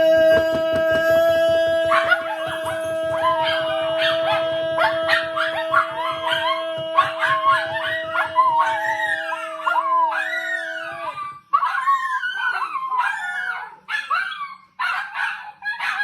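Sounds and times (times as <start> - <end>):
music with quick beat: 0.0 - 10.1
dog howling and yipping: 0.0 - 16.0.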